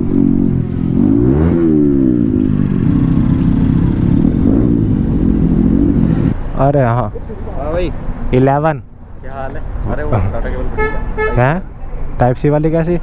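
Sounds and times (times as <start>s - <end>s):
motorcycle engine idling and revving: 0.0s - 8.3s.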